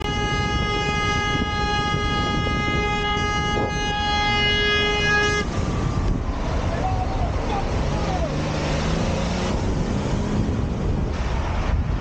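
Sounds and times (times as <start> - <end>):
vehicle horn blast: 0.0 - 5.6.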